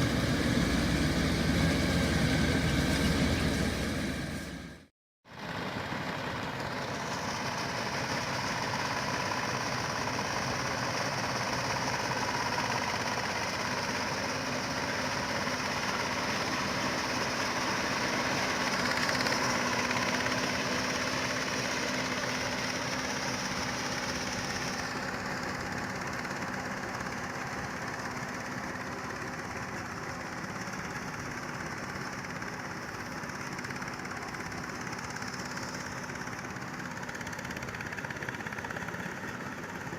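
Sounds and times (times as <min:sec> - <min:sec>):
high whine: 0:00.0 - 0:04.9
combine harvester drone: 0:00.0 - 0:39.9.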